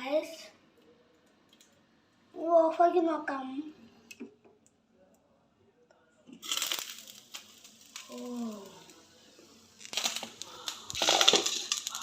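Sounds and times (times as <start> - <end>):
popcorn rustling in a pan: 6.4 - 12.0.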